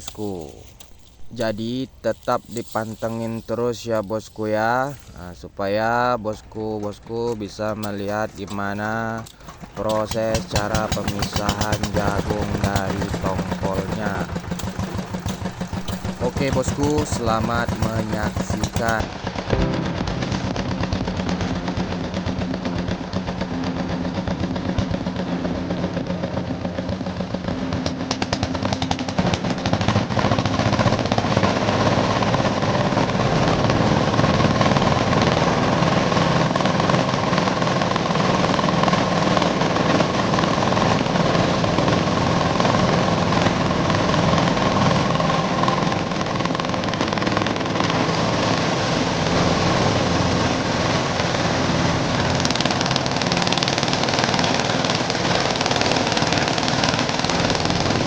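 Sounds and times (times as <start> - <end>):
corn sheller rattling: 0.0 - 5.6, 6.2 - 19.2
engine hum: 0.0 - 58.0.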